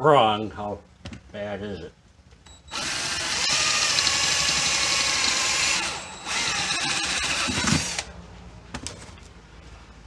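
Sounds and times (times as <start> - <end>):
electric drill running: 2.7 - 8.1.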